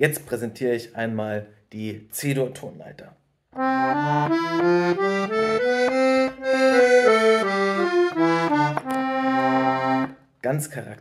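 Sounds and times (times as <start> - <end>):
accordion playing a scale: 3.6 - 10.2.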